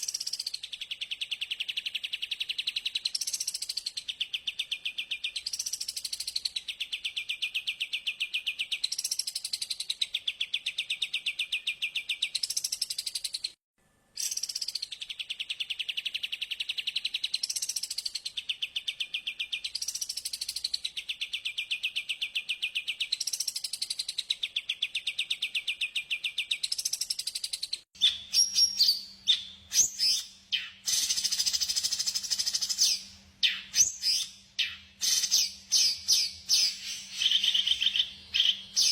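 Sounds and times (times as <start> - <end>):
bird chirps and whistles: 0.0 - 13.6, 14.2 - 38.9
songbird buzzy trill: 28.0 - 38.9.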